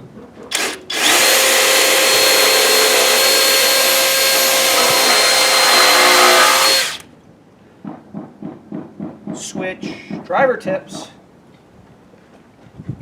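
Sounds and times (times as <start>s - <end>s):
power drill boring into wood: 0.5s - 7.0s.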